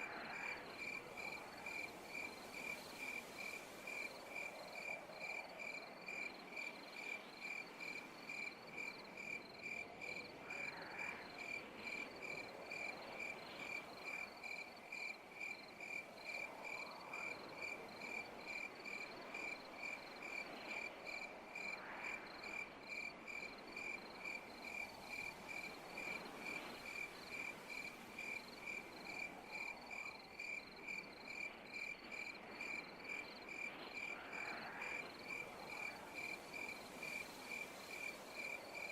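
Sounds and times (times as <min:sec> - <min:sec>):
cricket chirping: 0:00.0 - 0:38.9.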